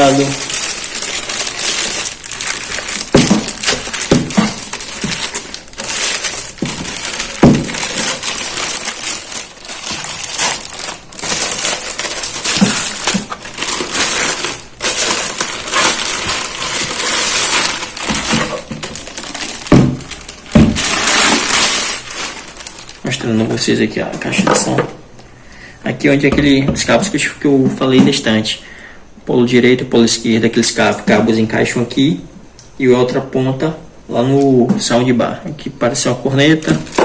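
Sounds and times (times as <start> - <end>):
styrofoam crunching and rubbing: 0.0 - 23.2
plastic wrapping crinkling: 0.0 - 24.8, 35.9 - 37.0.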